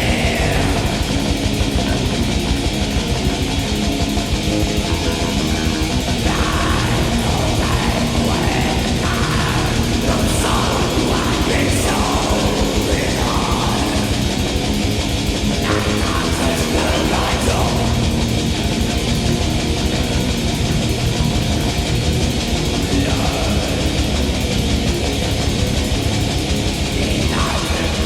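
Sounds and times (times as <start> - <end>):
harsh shrieked vocal: 0.0 - 3.0, 4.5 - 19.1
distorted guitar: 0.0 - 28.0
fast dense drumming: 0.0 - 28.0.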